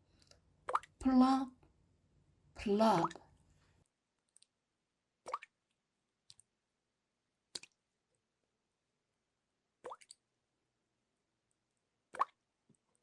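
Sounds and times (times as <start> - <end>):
water drops plopping into water: 0.7 - 1.0, 5.3 - 5.6, 9.8 - 10.2, 12.1 - 12.4.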